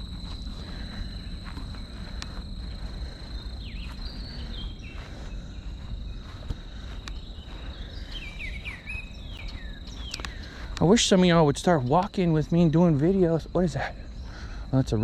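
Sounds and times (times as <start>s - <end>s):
low rumble: 0.0s - 11.9s
insects trilling: 0.0s - 15.0s
bird chirping: 0.6s - 13.1s.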